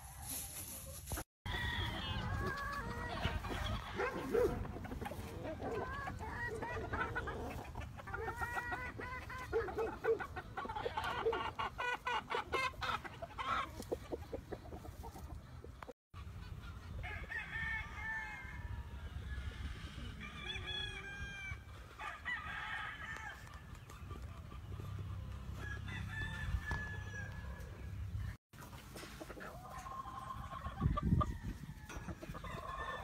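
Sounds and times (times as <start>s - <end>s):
chickens clucking: 0.3s - 17.3s, 23.4s - 33.0s
roosters crowing: 1.5s - 13.7s, 17.0s - 23.8s, 24.9s - 28.4s, 29.7s - 33.0s.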